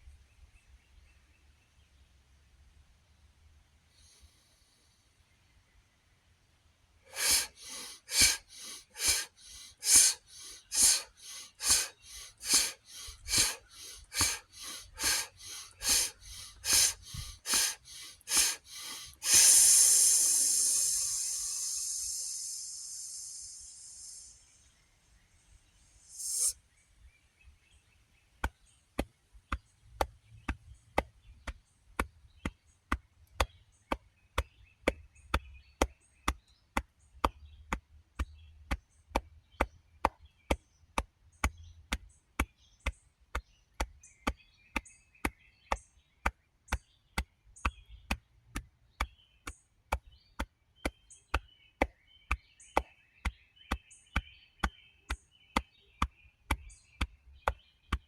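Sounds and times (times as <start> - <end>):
short hiss: 7.1 - 24.8, 26.0 - 26.6.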